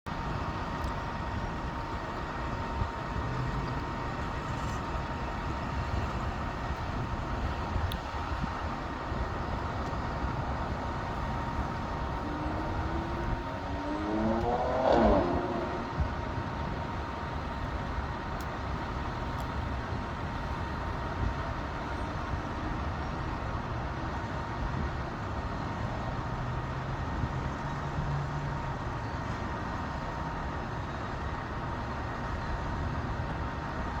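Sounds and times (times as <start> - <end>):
rumble of machinery and traffic: 0.0 - 34.0
constant high whine: 0.1 - 34.0
vehicle speeding past: 12.1 - 16.0.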